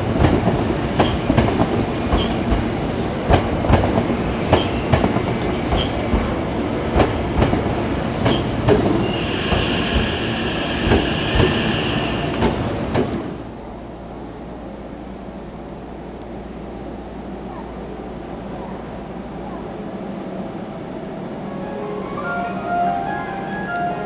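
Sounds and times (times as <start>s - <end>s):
train wheels clattering over joints: 0.0s - 13.4s
high wheel squeal: 8.3s - 12.6s.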